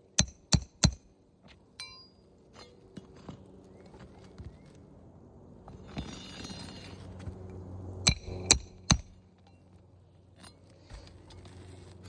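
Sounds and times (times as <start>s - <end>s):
hammer blows with metallic ring: 0.1s - 1.1s, 1.8s - 2.8s, 8.1s - 9.6s.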